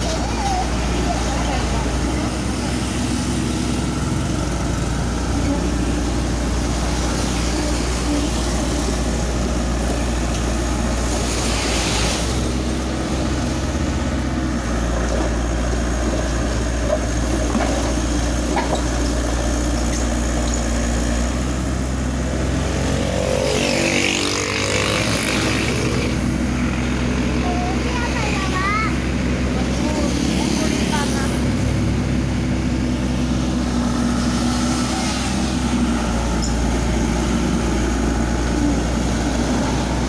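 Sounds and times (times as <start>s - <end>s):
excavator diesel engine running: 0.0s - 40.0s.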